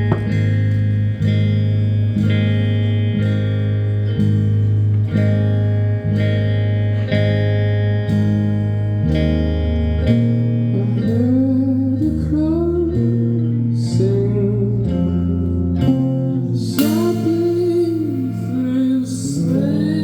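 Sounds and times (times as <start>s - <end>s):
bass line: 0.0s - 20.0s
guitar chords: 0.0s - 20.0s
person singing: 10.8s - 20.0s.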